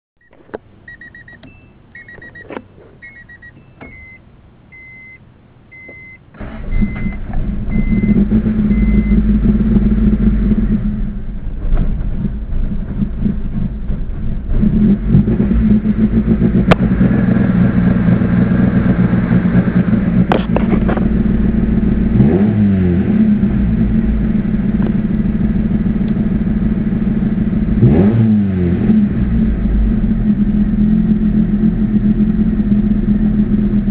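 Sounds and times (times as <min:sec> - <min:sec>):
electronic warning chime beeping: 0:00.2 - 0:07.1
car engine starting: 0:00.3 - 0:33.9
engine revving: 0:06.4 - 0:33.9
engine rough lumpy idle: 0:07.2 - 0:22.2, 0:23.2 - 0:27.8, 0:29.3 - 0:33.9.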